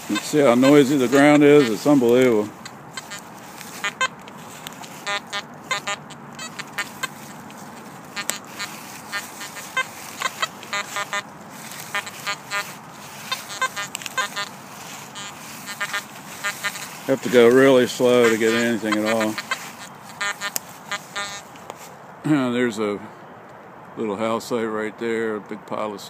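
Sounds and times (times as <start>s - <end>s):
metal detector beeps and grunts: 0.0s - 21.5s.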